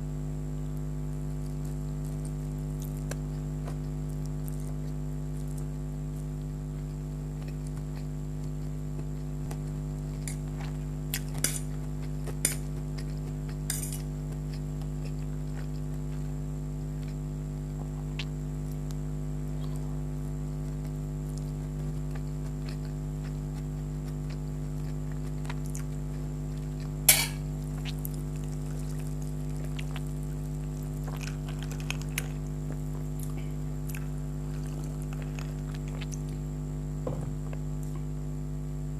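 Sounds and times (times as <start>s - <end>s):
steady low hum: 0.0s - 38.9s
cutlery clinking against a plate: 11.2s - 11.8s, 12.4s - 12.7s, 13.7s - 14.1s, 27.1s - 27.4s.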